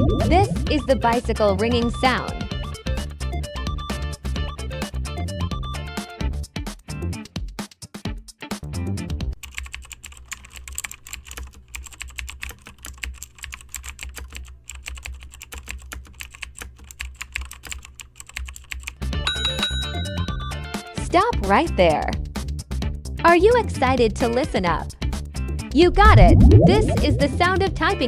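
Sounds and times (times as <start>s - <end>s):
typing on computer keyboard: 9.4s - 19.0s.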